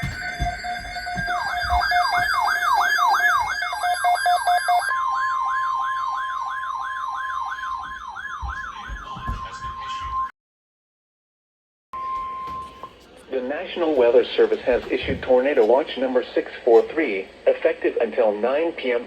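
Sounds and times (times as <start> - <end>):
wailing siren alert tone: 0.0 - 10.3.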